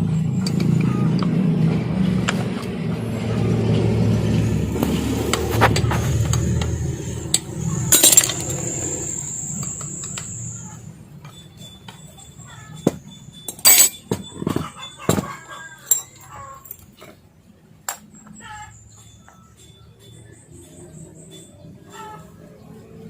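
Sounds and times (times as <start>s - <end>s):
metallic clank: 4.7s - 10.6s, 12.8s - 16.8s
metal parts clicking and clinking: 5.3s - 10.6s, 11.2s - 17.2s.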